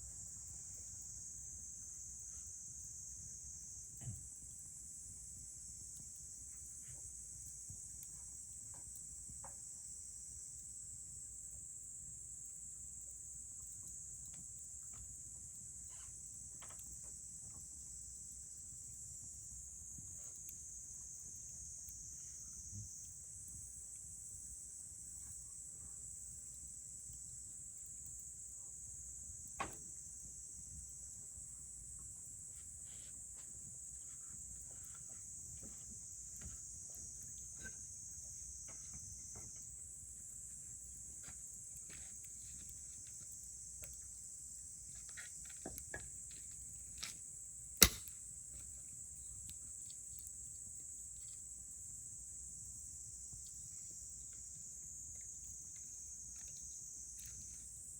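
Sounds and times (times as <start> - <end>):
insects chirring: 0.0 - 57.9
loud fire pop: 47.8 - 48.1
wood fire crackling: 47.8 - 48.1.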